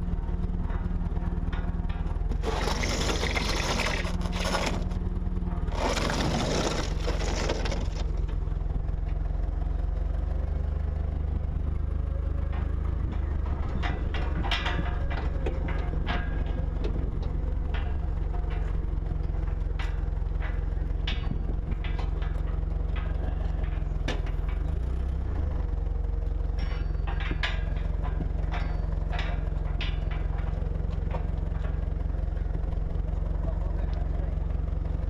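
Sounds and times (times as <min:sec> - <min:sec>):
low mechanical drone: 0:00.0 - 0:35.0
sharp clicks and knocks: 0:12.5 - 0:25.0, 0:26.6 - 0:34.1.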